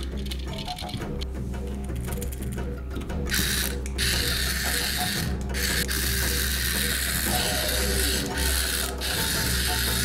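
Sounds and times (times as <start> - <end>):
toy electric motor whirring: 3.3 - 10.0.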